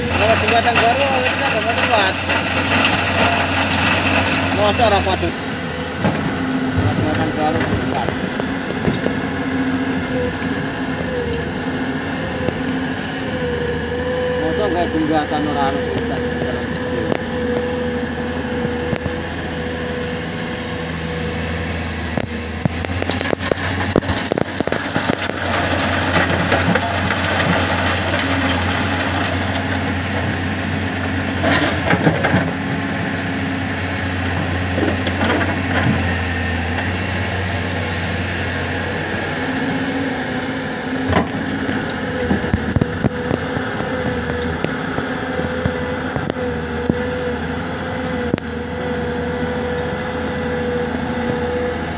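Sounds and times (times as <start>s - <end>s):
rock crunching and clattering: 0.0s - 11.6s, 22.0s - 32.8s, 41.0s - 46.4s
diesel engine running: 0.0s - 51.9s.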